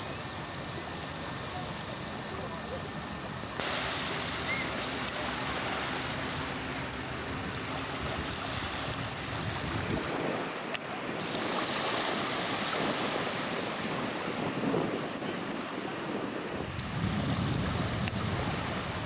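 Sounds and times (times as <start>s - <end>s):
sea surf: 0.0s - 19.0s
wind on microphone: 0.0s - 19.0s.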